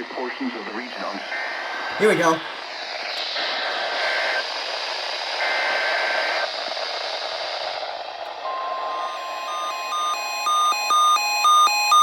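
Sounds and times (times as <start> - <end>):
steady radio tone: 0.0 - 2.7
radio static hiss: 0.0 - 8.1.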